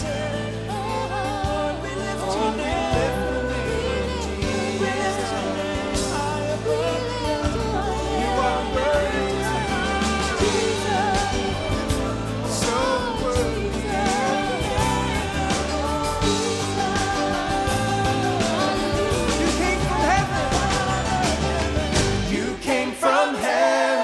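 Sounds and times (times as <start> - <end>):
worship song with band: 0.0 - 24.0.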